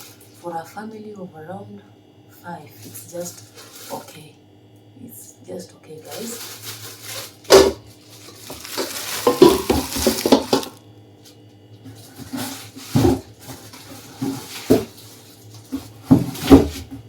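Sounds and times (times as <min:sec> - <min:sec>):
metal pots clattering and knocking: 0:08.4 - 0:10.8.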